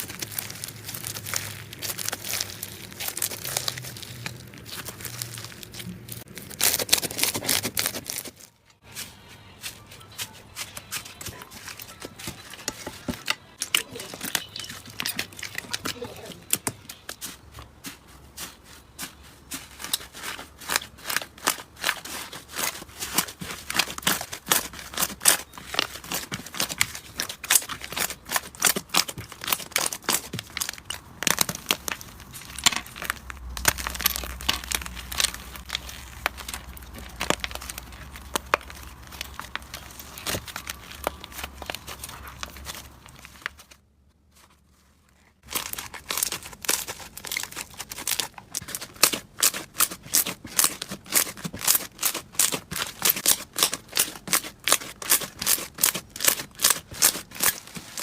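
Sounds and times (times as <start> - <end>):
slime crackling and popping: 0.0 - 8.5, 19.5 - 43.7, 45.4 - 58.0.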